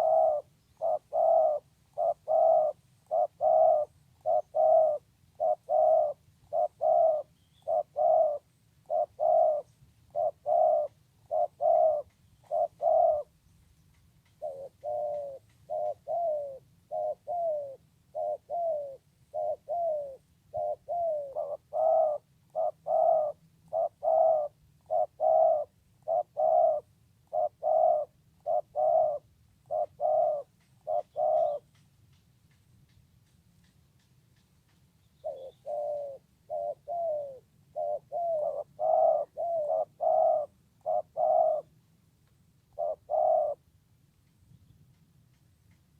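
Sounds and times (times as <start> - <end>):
dove cooing: 0.0 - 13.5, 14.2 - 31.8, 34.7 - 41.8, 42.7 - 43.7.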